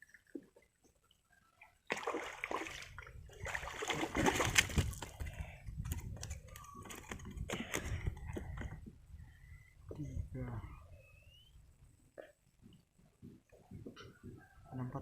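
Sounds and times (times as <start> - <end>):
water splashing and sloshing: 0.0 - 8.8.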